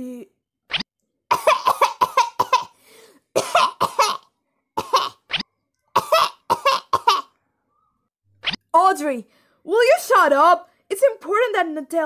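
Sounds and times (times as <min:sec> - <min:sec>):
person coughing: 0:01.3 - 0:02.8, 0:03.4 - 0:04.2, 0:06.0 - 0:07.3
breath in: 0:02.8 - 0:03.2.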